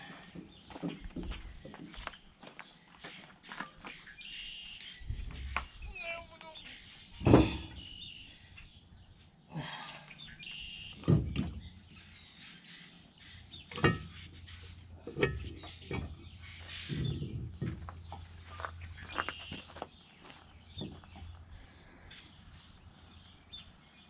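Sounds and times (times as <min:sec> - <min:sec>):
birds chirping: 0:00.0 - 0:24.0
knocks and clunks on metal parts: 0:07.2 - 0:07.8, 0:11.0 - 0:11.9, 0:13.5 - 0:18.3.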